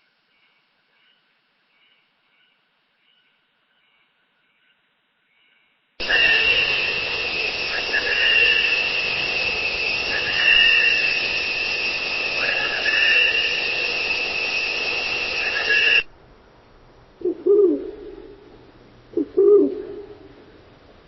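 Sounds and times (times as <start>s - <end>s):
high-pitched whistling hiss: 0.0s - 4.7s, 5.3s - 16.1s
owl hooting: 6.0s - 16.1s, 17.2s - 20.6s.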